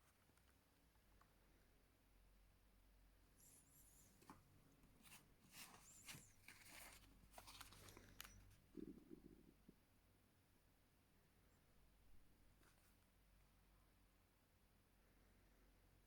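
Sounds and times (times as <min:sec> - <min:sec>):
rustling: 0:03.4 - 0:09.4.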